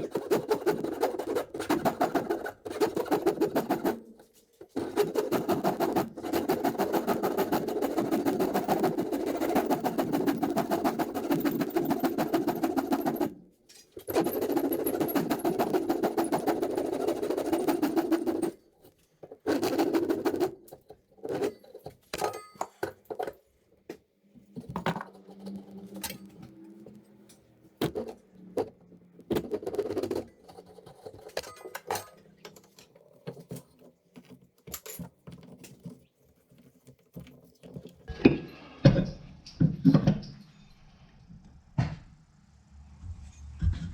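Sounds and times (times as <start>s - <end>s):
rasping strokes on wooden handle: 4.8s - 13.3s, 14.1s - 18.6s.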